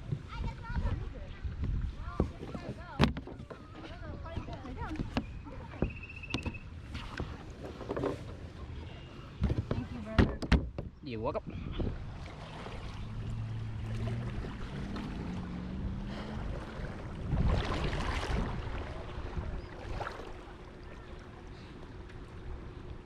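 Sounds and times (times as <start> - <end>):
wind noise on microphone: 0.0 - 7.4, 9.4 - 20.0
water sloshing around kayak: 0.0 - 23.0.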